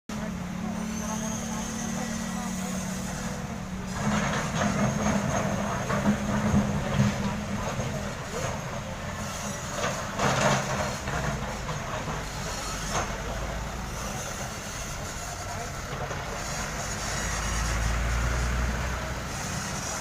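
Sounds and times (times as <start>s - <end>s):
diesel construction machinery running: 0.1s - 20.0s.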